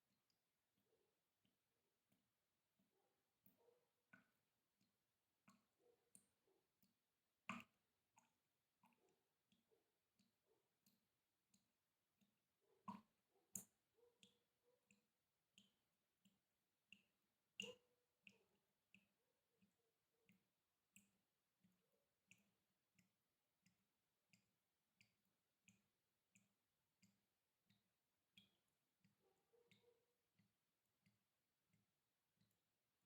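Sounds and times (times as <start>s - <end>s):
water dripping: 1.4s - 33.0s.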